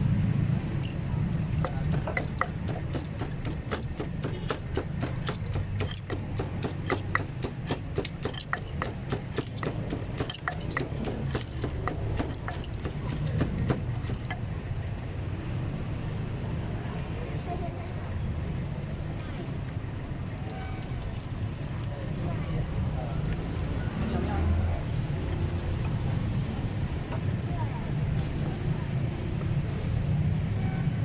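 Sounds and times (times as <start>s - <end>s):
pestle pounding in a mortar: 1.6s - 14.5s.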